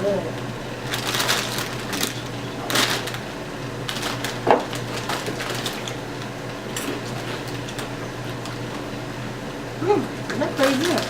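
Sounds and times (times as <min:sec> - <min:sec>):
tortilla chips crunching: 0:00.8 - 0:06.1, 0:10.3 - 0:11.0.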